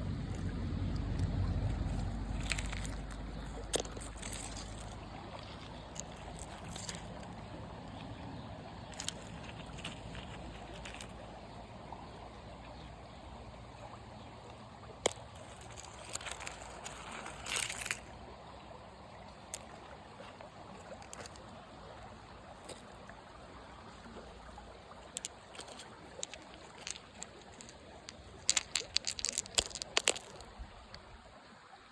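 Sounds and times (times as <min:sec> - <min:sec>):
water trickling and sloshing: 0:00.0 - 0:31.9
sharp splashes and clicks: 0:25.1 - 0:31.0.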